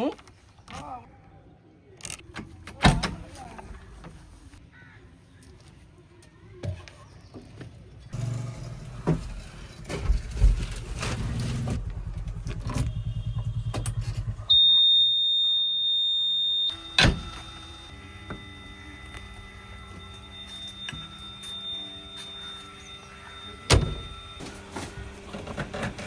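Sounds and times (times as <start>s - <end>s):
diesel engine throbbing: 8.2s - 14.6s
high-pitched beep: 14.5s - 16.8s.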